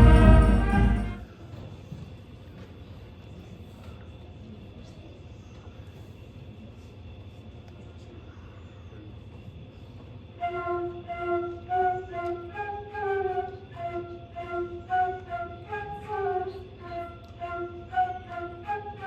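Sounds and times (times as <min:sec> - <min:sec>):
flute melody: 0:00.0 - 0:01.2, 0:10.4 - 0:19.0
low room hum: 0:00.0 - 0:19.0.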